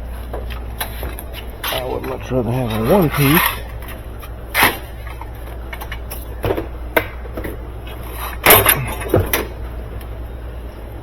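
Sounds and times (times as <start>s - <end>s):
steady low hum: 0.0s - 11.0s
knocks of machine parts handled: 8.4s - 9.6s.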